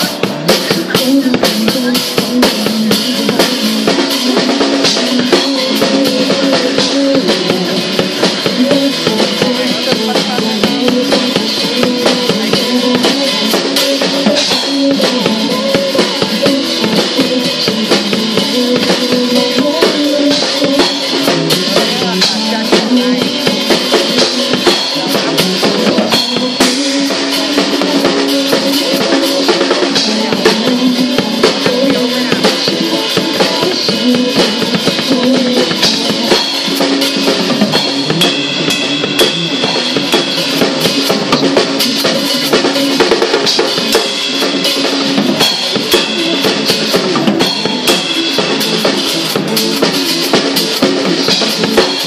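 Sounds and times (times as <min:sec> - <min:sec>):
drum kit beat: 0:00.0 - 0:52.0
recorded pop song: 0:00.0 - 0:52.0.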